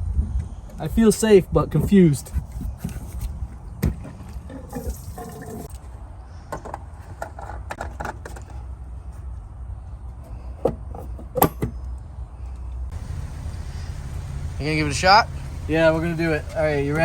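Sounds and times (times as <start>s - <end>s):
low steady rumble: 12.9s - 17.0s.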